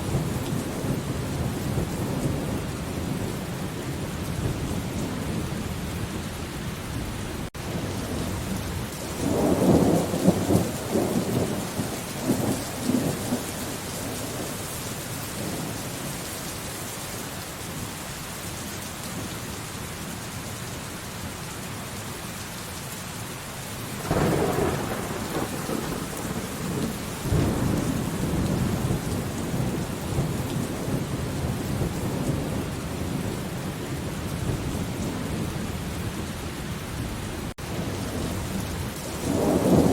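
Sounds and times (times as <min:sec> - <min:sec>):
rolling thunder: 0:00.0 - 0:05.6, 0:07.6 - 0:14.5, 0:24.0 - 0:39.9
steady rain: 0:00.0 - 0:39.9.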